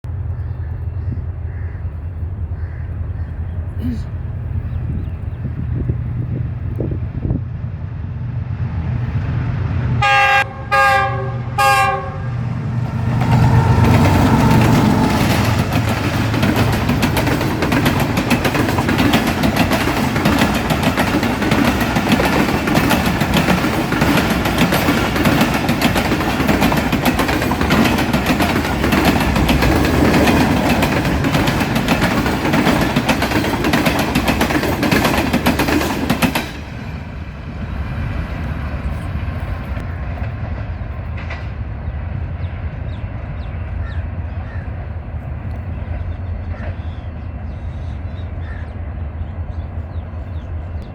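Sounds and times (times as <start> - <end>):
locomotive horn blasts: 10.0 - 16.0
train wheels clattering over track: 12.6 - 43.0.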